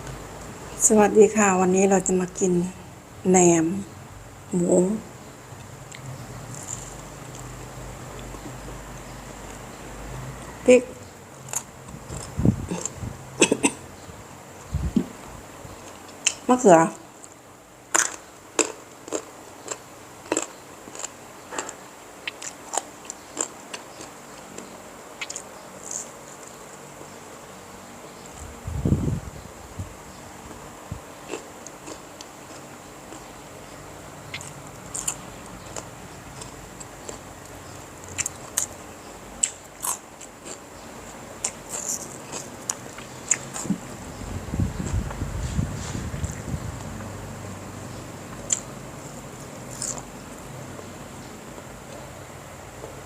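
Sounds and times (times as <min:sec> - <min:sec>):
low room noise: 0:00.0 - 0:53.0
chewing crunchy food: 0:05.6 - 0:09.6, 0:11.5 - 0:13.0, 0:17.2 - 0:27.2, 0:31.2 - 0:43.9, 0:48.2 - 0:50.9.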